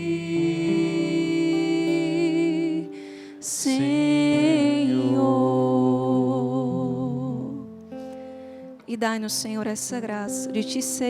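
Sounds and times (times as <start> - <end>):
person singing with vibrato: 0.0 - 8.1
plucked guitar: 0.0 - 11.0.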